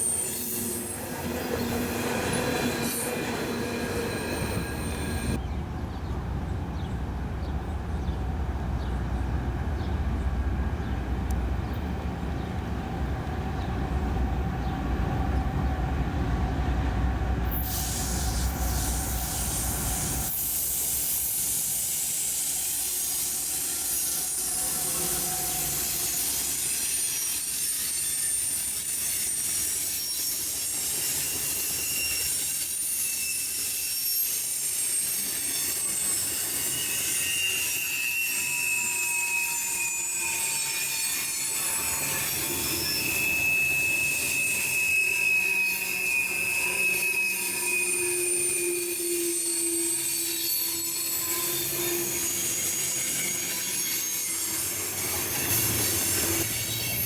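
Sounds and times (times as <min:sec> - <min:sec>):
steel wheels squealing on rails: 0:00.0 - 0:05.7, 0:08.8 - 0:57.0
train engine rumble: 0:00.0 - 0:26.6
railcars rolling hiss: 0:00.0 - 0:57.0.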